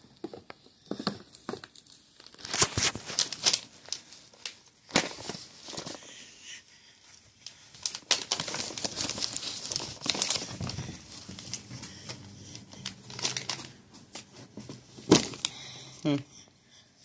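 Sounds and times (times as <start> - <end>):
gift packaging crinkling: 0.9 - 6.2, 7.4 - 16.2
packaging tearing: 1.7 - 5.8, 7.8 - 11.6, 12.8 - 13.8.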